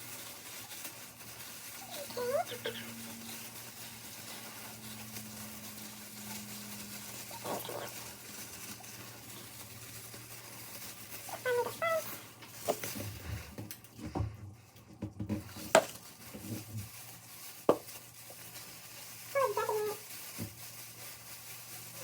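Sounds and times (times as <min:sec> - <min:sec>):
domestic animal calls: 0:01.7 - 0:03.4, 0:07.1 - 0:08.2, 0:11.3 - 0:12.3.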